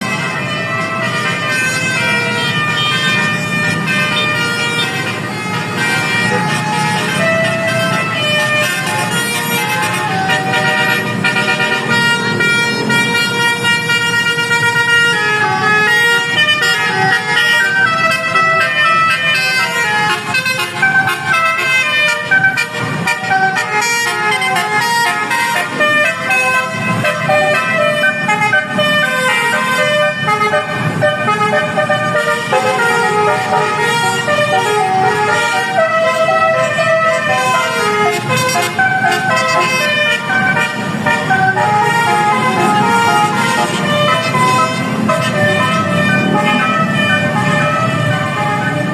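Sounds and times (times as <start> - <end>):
musical air horn playing a tune: 16.0 - 48.7.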